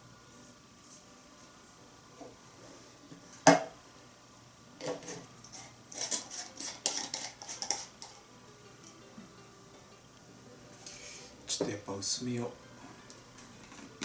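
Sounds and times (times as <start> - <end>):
metal cookware clattering: 4.8 - 8.2.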